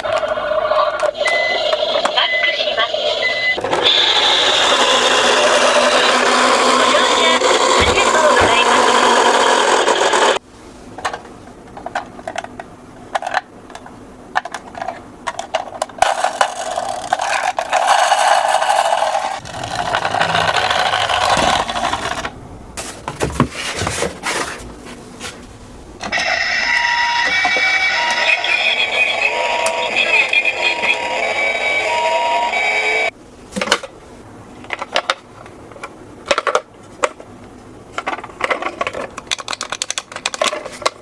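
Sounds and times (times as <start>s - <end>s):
electronic toy sounds: 0.4s - 10.4s, 26.1s - 33.1s
plastic toy cars rattling: 13.1s - 22.3s, 37.9s - 41.0s.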